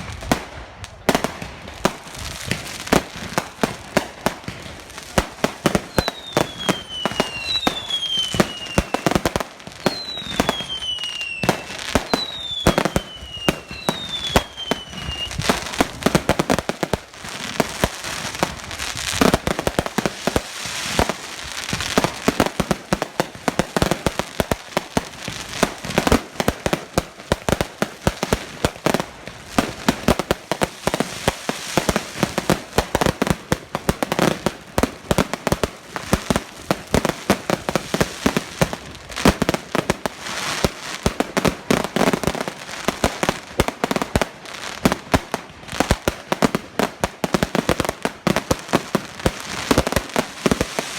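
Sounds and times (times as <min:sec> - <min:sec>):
fireworks bangs and crackling: 0:00.0 - 0:50.9
firework whistles falling in pitch: 0:05.9 - 0:09.2, 0:09.8 - 0:15.6.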